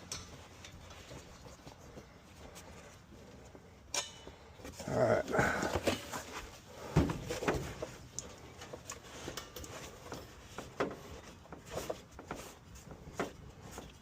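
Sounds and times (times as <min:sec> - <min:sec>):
tools clicking and knocking: 0:00.0 - 0:01.0, 0:03.9 - 0:04.4.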